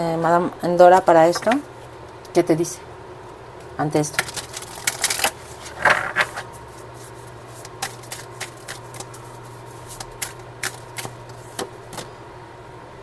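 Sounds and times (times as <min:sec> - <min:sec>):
cards being shuffled: 0:04.1 - 0:12.1.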